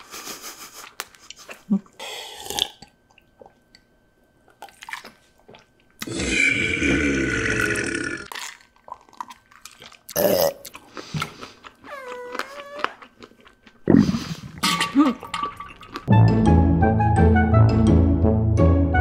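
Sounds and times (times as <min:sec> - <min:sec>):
wet chewing clicks and smacks: 0:04.5 - 0:06.1, 0:08.3 - 0:13.9
loud belch: 0:06.0 - 0:08.3, 0:10.2 - 0:10.6.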